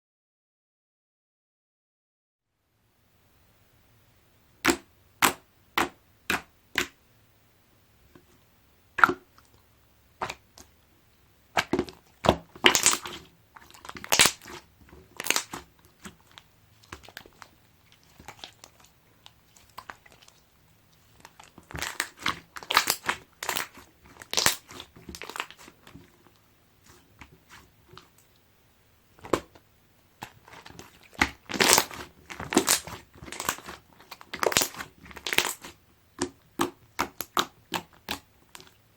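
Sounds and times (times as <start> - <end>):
slime squeezed by hand: 12.6 - 16.4, 21.0 - 26.1, 30.2 - 38.7.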